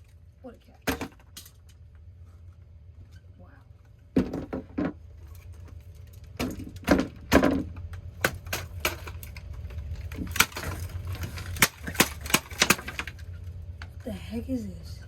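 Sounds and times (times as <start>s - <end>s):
broken plastic clattering: 0.8s - 1.8s, 4.1s - 13.4s.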